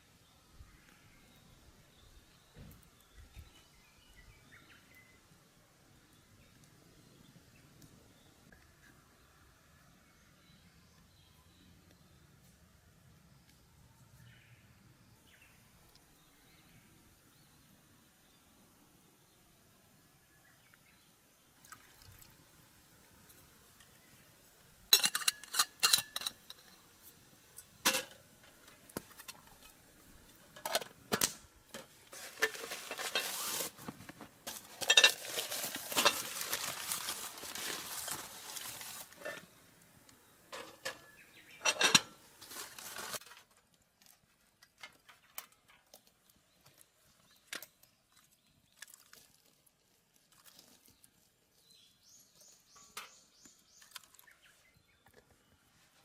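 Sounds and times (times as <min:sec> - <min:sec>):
cookware clinking and knocking: 0:25.0 - 0:26.6, 0:34.7 - 0:35.4, 0:40.5 - 0:42.2
utensil scraping: 0:32.1 - 0:39.4.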